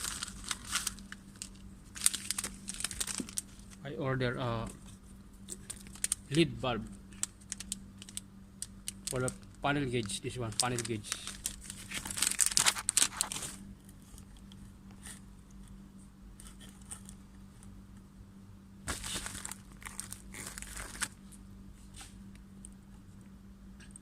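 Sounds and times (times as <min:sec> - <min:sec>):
plastic packaging crinkling and tearing: 0:00.0 - 0:03.8, 0:05.4 - 0:06.4, 0:07.1 - 0:15.2, 0:18.9 - 0:21.3.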